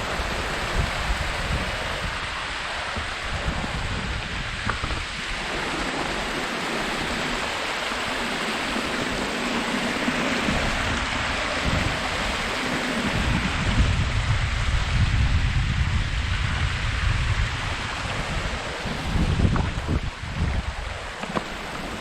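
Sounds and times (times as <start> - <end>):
small waterfall rushing: 0.0 - 22.0
wind buffeting microphone: 0.0 - 22.0.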